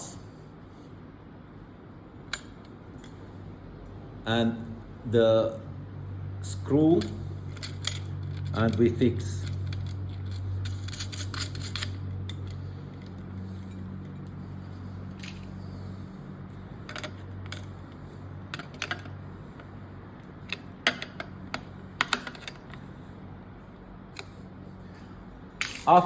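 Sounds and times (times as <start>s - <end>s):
steady low hum: 0.0s - 26.0s
small metal clicks and taps: 20.4s - 22.8s.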